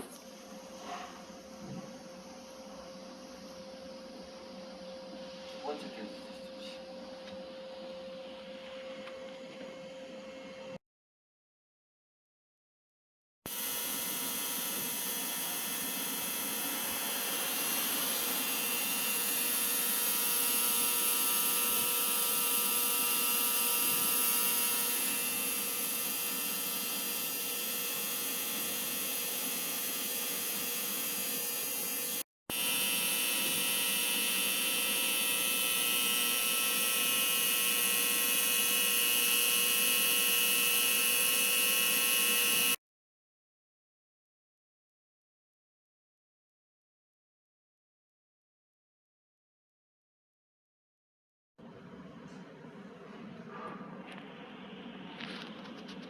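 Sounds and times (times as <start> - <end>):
high-pitched machine whine: 0.0 - 10.8, 13.5 - 42.8.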